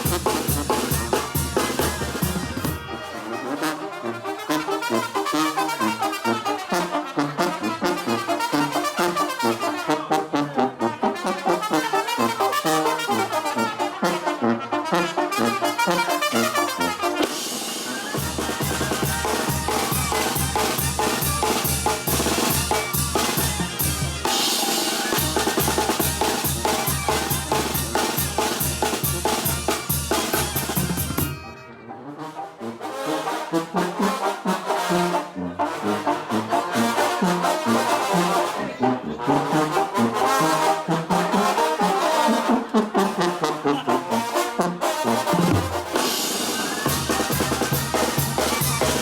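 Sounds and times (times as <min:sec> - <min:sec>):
drums: 0:00.0 - 0:06.3, 0:15.1 - 0:31.5, 0:43.8 - 0:49.0
brass band playing: 0:00.0 - 0:49.0.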